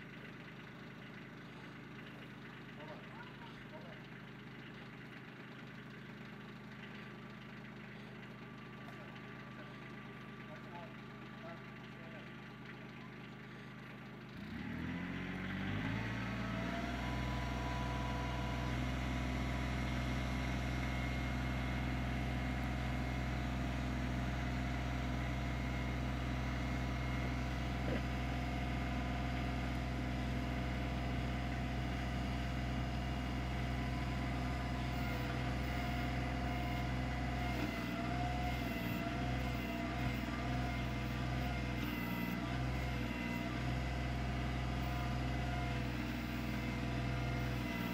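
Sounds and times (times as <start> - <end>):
tractor diesel engine revving: 13.7 - 47.9.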